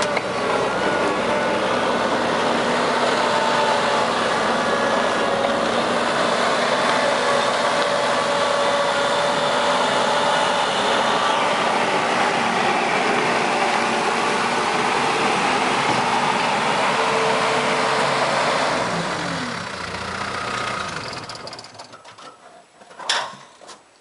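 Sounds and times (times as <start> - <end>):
diesel engine running and shutting off: 0.0 - 22.4.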